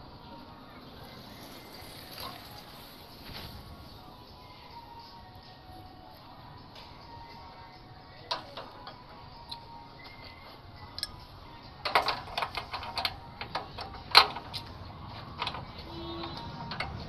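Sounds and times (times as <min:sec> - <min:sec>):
small hard parts clicking: 0:11.8 - 0:17.0.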